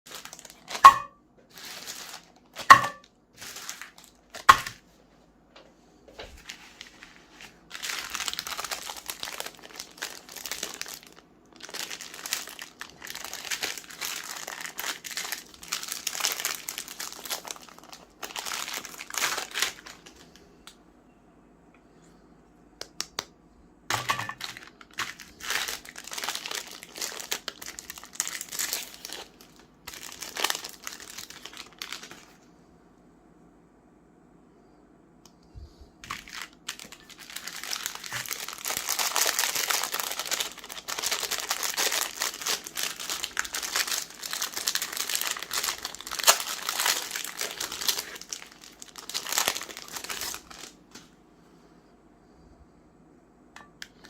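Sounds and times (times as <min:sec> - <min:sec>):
crinkling from handling: 0:00.1 - 0:04.9, 0:06.1 - 0:20.8, 0:23.9 - 0:32.4, 0:36.0 - 0:51.1.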